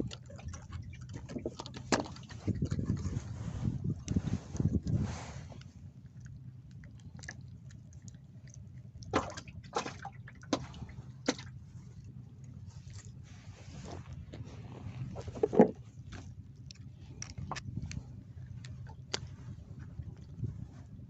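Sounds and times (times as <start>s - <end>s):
water sloshing: 0.0s - 21.0s
sharp splashes or knocks: 9.1s - 11.5s.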